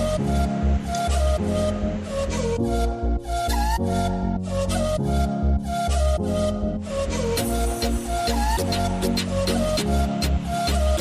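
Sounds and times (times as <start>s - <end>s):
flute-like melodic notes: 0.0s - 11.0s
steady bass beat: 7.4s - 11.0s.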